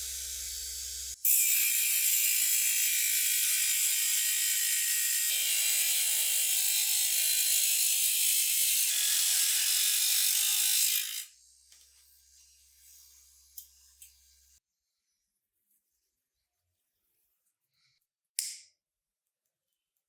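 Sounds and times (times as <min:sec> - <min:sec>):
handheld motorised tool buzzing: 0:00.0 - 0:12.2.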